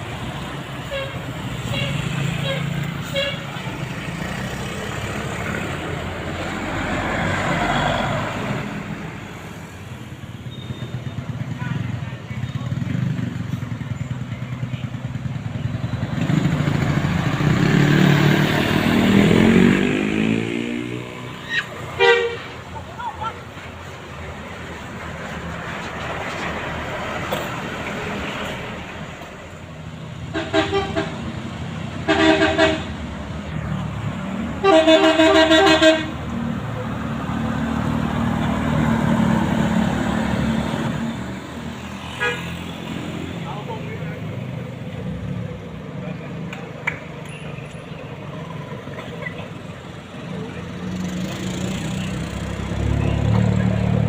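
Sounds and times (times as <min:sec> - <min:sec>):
vehicle engine passing by: 0:01.4 - 0:09.4, 0:15.3 - 0:21.6, 0:36.4 - 0:46.4, 0:50.3 - 0:54.0.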